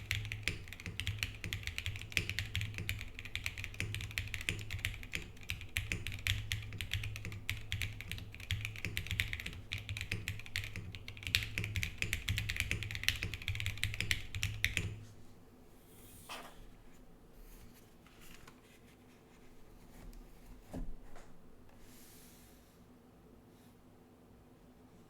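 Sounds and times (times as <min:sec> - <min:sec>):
fast mechanical keyboard typing: 0:00.0 - 0:15.0.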